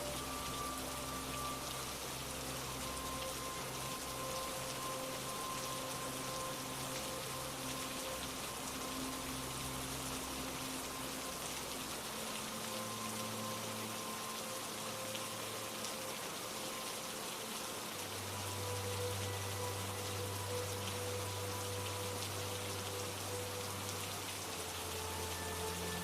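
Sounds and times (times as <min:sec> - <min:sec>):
soft sustained music notes: 0:00.0 - 0:26.0
steady rainfall: 0:00.0 - 0:26.0.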